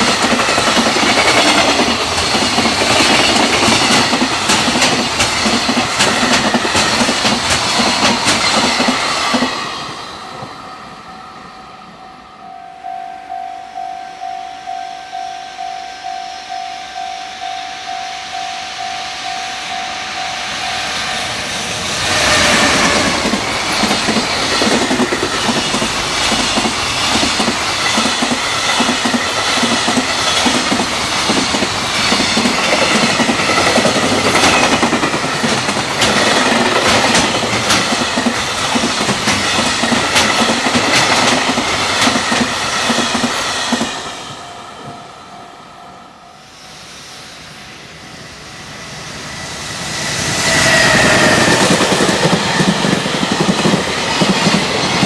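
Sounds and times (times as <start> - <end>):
train wheels clattering over rail joints: 0.0 - 10.5, 22.0 - 44.4, 50.8 - 55.0
level-crossing warning bell: 0.0 - 49.0
train rushing past: 0.0 - 55.0.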